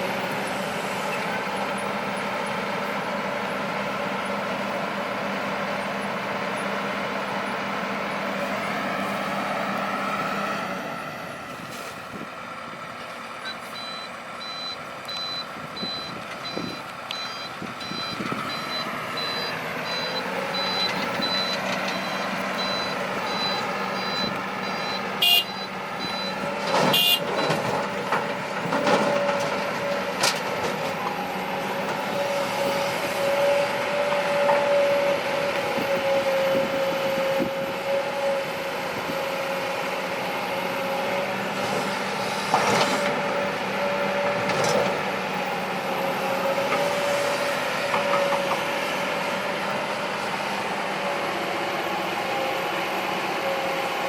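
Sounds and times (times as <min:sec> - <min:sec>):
heavy diesel machinery running: 0:00.0 - 0:54.0
reversing alarm beeping: 0:13.4 - 0:27.6.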